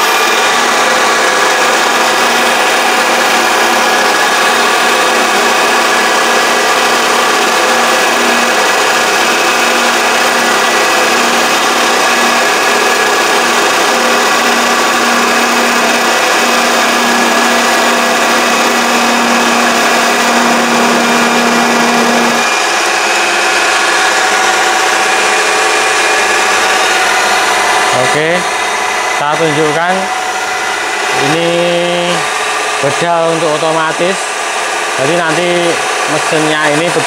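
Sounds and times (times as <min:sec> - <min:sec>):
lathe machine whine: 0:00.0 - 0:37.0
low machine hum: 0:00.0 - 0:37.0
tool cutting workpiece: 0:00.0 - 0:37.0.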